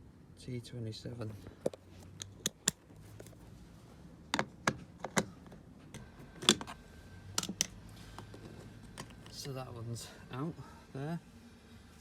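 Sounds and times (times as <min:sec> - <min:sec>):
screwdriver clicks and taps: 0:02.2 - 0:02.8.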